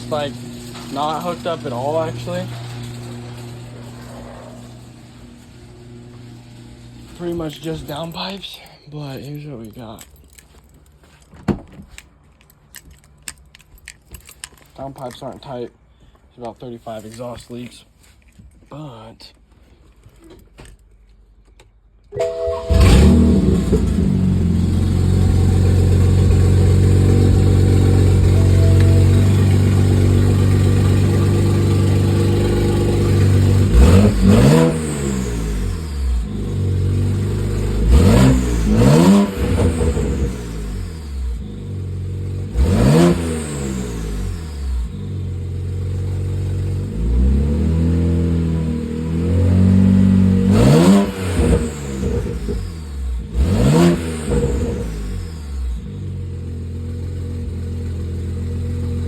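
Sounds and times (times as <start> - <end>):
car engine idling: 22.5 - 59.0
car engine revving: 22.5 - 59.0.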